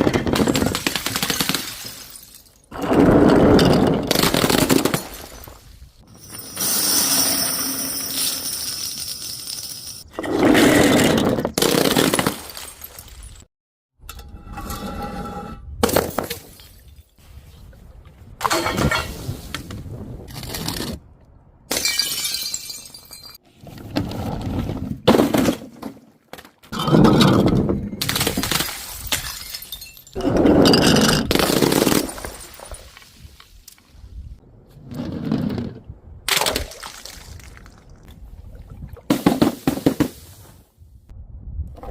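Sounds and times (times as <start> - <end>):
glass bottles shattering: 0.2 - 2.8, 3.6 - 10.0, 11.8 - 13.5, 21.7 - 23.4, 26.8 - 33.2
clinking glass shards: 6.2 - 10.0
glass shattering: 21.7 - 23.4, 28.0 - 30.2.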